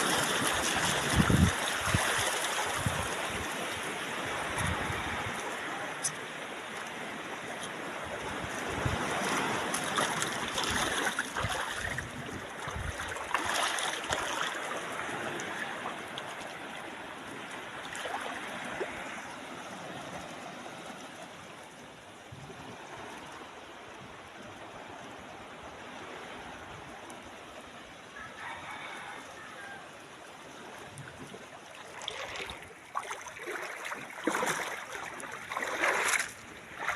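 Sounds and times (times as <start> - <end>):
wind buffeting microphone: 0.0 - 5.4, 8.1 - 14.2
water rushing: 0.0 - 36.9.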